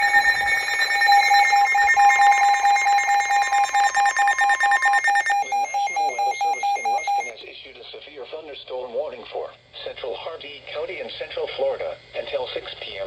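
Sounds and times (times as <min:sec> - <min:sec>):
buzzing alert signal: 0:00.0 - 0:07.3
radio alert alarm beeping: 0:00.0 - 0:07.3.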